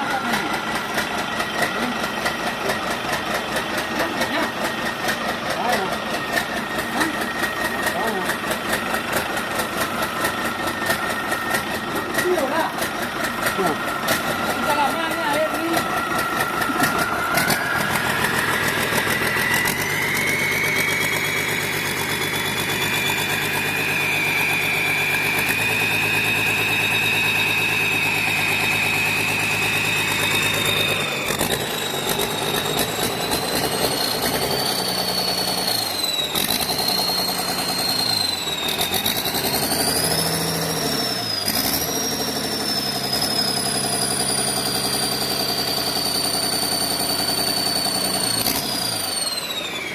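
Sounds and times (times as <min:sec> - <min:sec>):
diesel engine running: 0:00.0 - 0:49.9
high turbo whine: 0:00.0 - 0:49.9.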